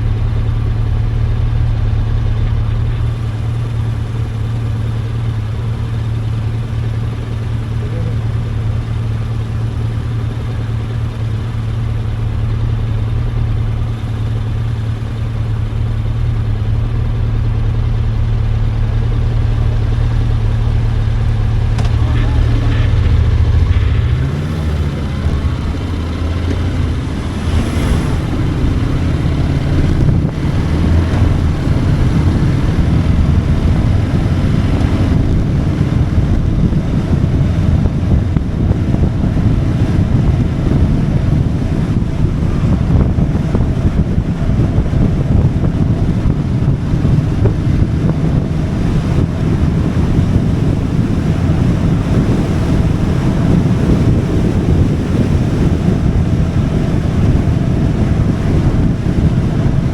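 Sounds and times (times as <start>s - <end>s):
motorcycle engine accelerating: 0.0s - 59.9s
wind buffeting microphone: 2.7s - 59.9s.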